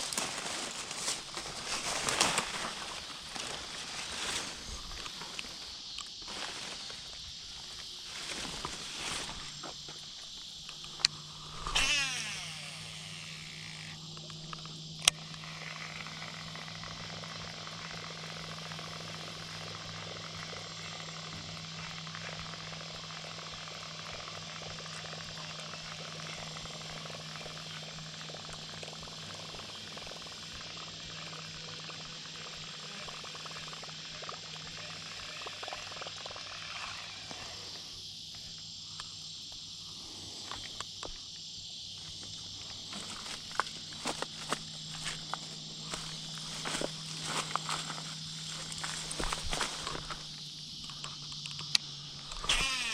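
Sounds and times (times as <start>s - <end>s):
crickets and insects chirping: 0.0s - 52.9s
brief falling whir: 11.6s - 13.2s.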